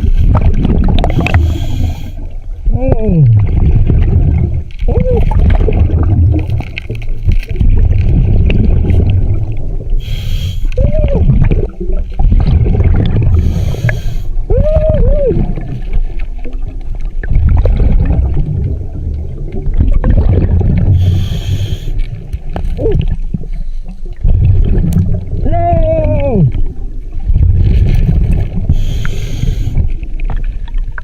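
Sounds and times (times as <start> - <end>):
bubbles gurgling: 0.0 - 31.0
underwater rumble: 0.0 - 31.0
regulator hissing inhales: 1.2 - 2.2, 10.0 - 10.7, 13.4 - 14.4, 21.0 - 22.1, 28.7 - 29.8.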